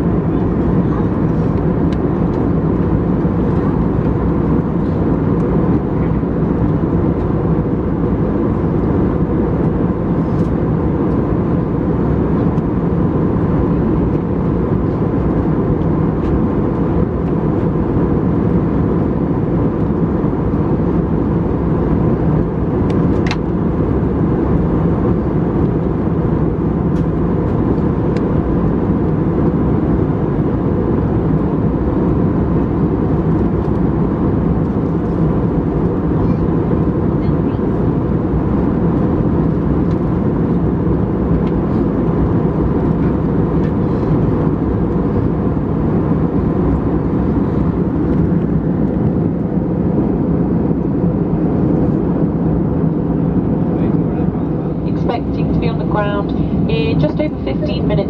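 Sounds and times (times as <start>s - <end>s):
airplane cabin engine rush: 0.0s - 58.0s
faint steady whine: 17.0s - 58.0s.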